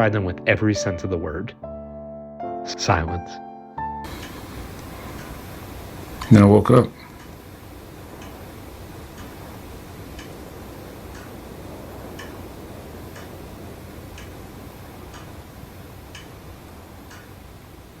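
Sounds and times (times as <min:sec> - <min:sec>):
clock ticking: 0:04.0 - 0:05.4, 0:08.1 - 0:08.5, 0:09.1 - 0:15.4, 0:16.1 - 0:16.4, 0:17.0 - 0:17.3
low room hum: 0:04.1 - 0:18.0.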